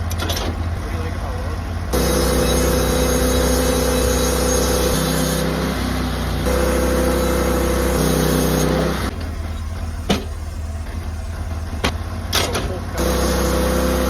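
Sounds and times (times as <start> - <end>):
engine-driven sawmill running: 0.0 - 14.0
hiss of saw cutting: 2.0 - 12.0.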